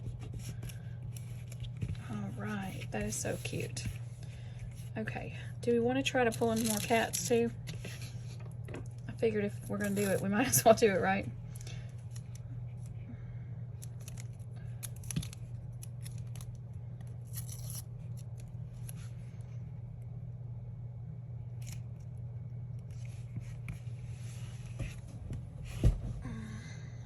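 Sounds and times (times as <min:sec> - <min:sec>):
steady low hum: 0:00.0 - 0:27.0
paper rustling: 0:06.3 - 0:08.4, 0:09.6 - 0:10.2.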